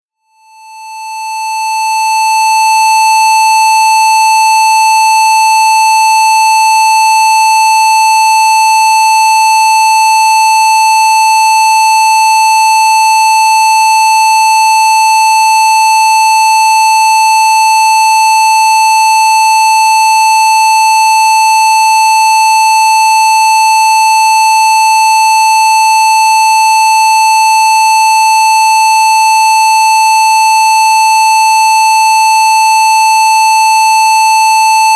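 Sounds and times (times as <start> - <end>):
steady electronic test tone: 27.0 - 34.9.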